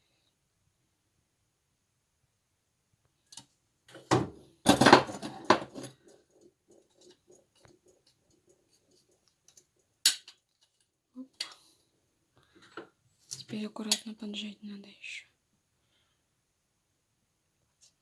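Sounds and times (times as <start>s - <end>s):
metal tools knocking and scraping: 3.9s - 6.2s.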